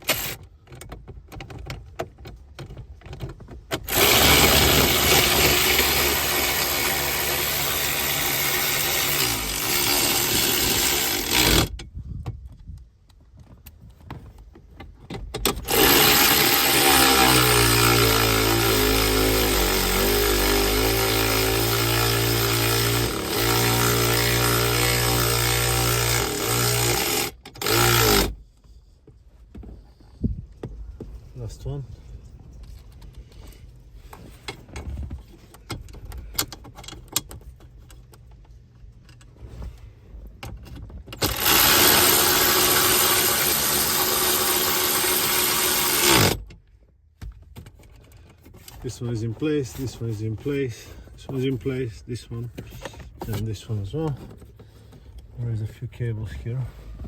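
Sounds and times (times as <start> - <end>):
cordless drill driving screws: 0.0 - 0.4, 3.8 - 11.7, 15.6 - 28.4, 41.2 - 46.5.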